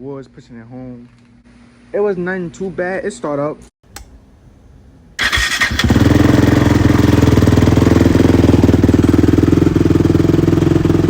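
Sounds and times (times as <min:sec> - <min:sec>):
quad engine starting and idling: 0:05.2 - 0:11.0.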